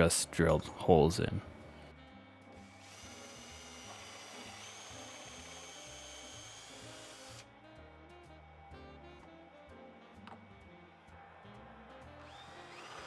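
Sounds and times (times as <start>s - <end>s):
background music: 0.0s - 13.0s
power drill drilling wood: 2.6s - 7.5s, 12.2s - 13.0s.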